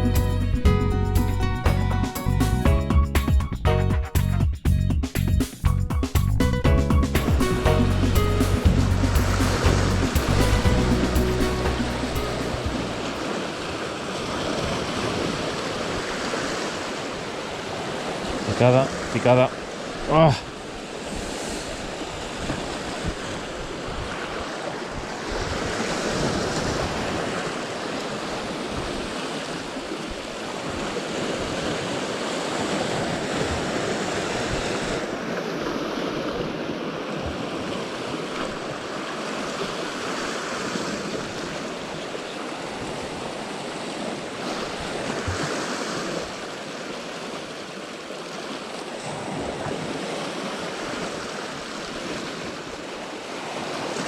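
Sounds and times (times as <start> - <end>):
sea waves washing in: 5.6 - 54.0
wind buffeting microphone: 7.7 - 13.3.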